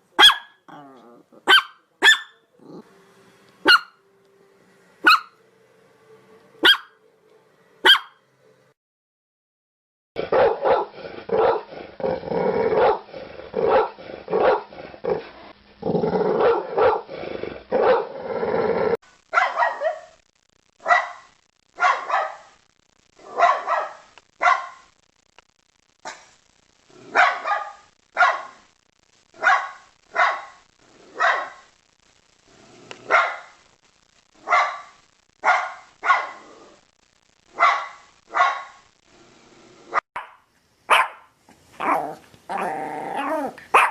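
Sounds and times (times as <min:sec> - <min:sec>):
dog barking: 0:00.2 - 0:00.7, 0:01.4 - 0:02.4, 0:03.6 - 0:04.0, 0:05.0 - 0:05.4, 0:06.6 - 0:07.0, 0:07.8 - 0:08.2, 0:10.2 - 0:11.7, 0:12.8 - 0:14.7, 0:16.4 - 0:17.1, 0:17.8 - 0:18.1, 0:19.3 - 0:20.2, 0:20.8 - 0:22.5, 0:23.2 - 0:24.9, 0:27.1 - 0:28.6, 0:29.4 - 0:31.7, 0:33.0 - 0:33.6, 0:34.4 - 0:36.4, 0:37.5 - 0:38.9, 0:39.9 - 0:42.1, 0:43.6 - 0:43.9
dog growling: 0:00.7 - 0:01.6, 0:02.5 - 0:03.0, 0:10.2 - 0:19.0, 0:26.9 - 0:27.3, 0:32.5 - 0:33.2, 0:36.2 - 0:36.8, 0:39.1 - 0:40.0, 0:41.7 - 0:43.9.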